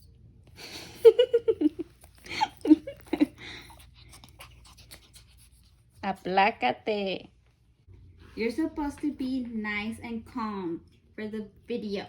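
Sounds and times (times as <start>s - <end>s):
woman laughing: 0.6s - 3.7s.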